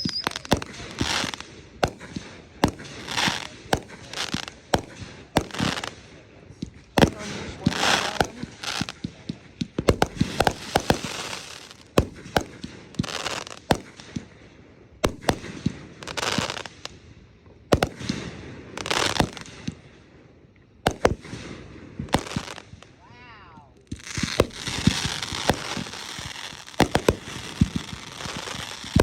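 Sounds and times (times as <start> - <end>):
fireworks hissing: 0.0 - 6.0, 6.9 - 9.0, 9.8 - 13.8, 22.1 - 23.0, 23.8 - 29.0
fireworks bangs: 0.0 - 17.0, 17.7 - 20.0, 20.8 - 29.0.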